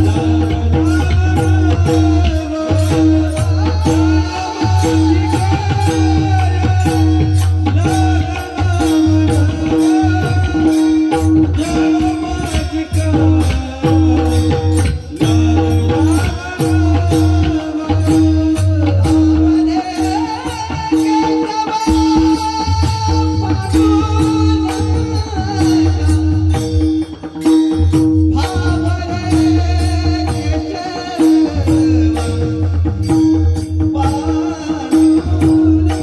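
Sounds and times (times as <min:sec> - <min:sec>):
hand drum rhythm: 0:00.0 - 0:36.0
man singing: 0:00.0 - 0:36.0.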